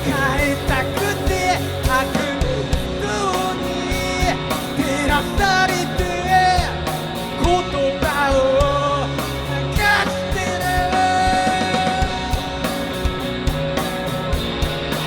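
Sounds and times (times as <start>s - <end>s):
person singing: 0.0s - 12.8s
drum beat: 0.0s - 15.0s
guitar: 0.0s - 15.0s.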